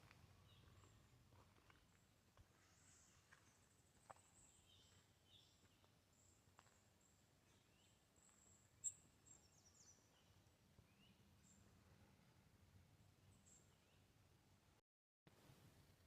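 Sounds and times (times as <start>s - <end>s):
faint bird chirps: 7.0s - 12.3s.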